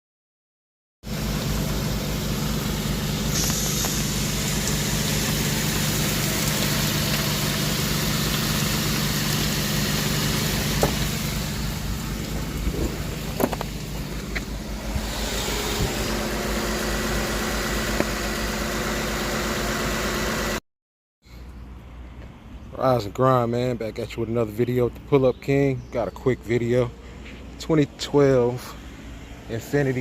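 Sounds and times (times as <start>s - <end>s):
car engine idling: 1.0s - 20.6s.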